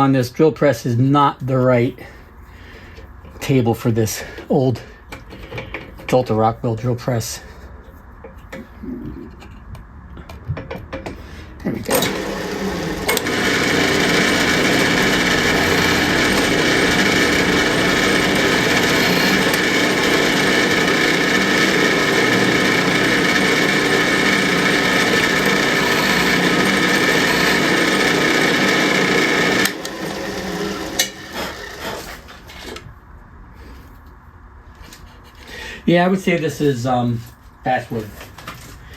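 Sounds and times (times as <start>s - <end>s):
drill press motor hum: 11.8s - 32.8s.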